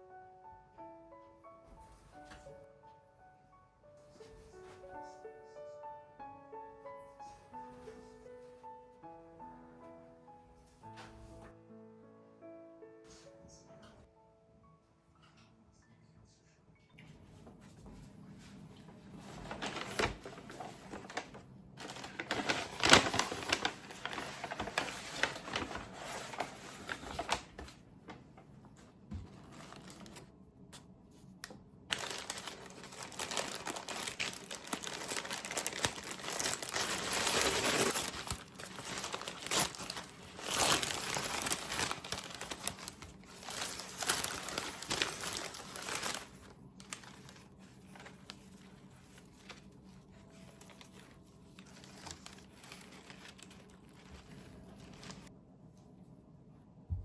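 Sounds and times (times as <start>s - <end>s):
crinkling and rustling: 17.2s - 55.3s.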